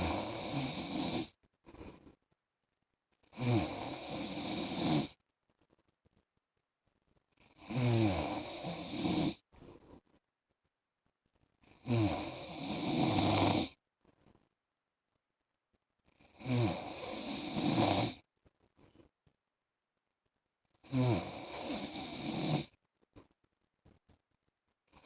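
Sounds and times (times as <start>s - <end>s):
man snoring: 0.0s - 1.3s, 3.4s - 5.1s, 7.6s - 9.4s, 11.8s - 13.8s, 16.4s - 18.2s, 20.9s - 22.7s.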